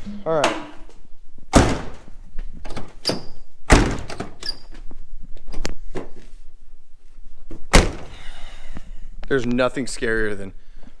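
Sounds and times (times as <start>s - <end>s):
door thunks and bangs: 1.5s - 4.5s, 7.7s - 8.2s.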